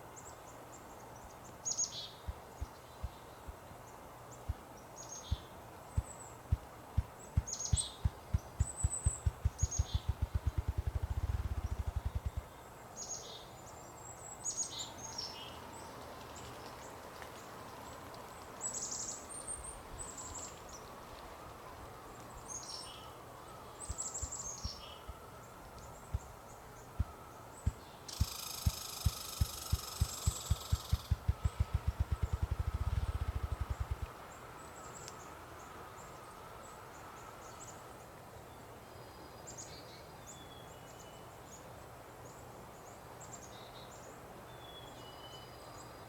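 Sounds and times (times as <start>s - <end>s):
songbirds chirping: 0.0s - 46.0s
grouse drumming wing thumps: 5.3s - 12.5s, 27.0s - 34.1s.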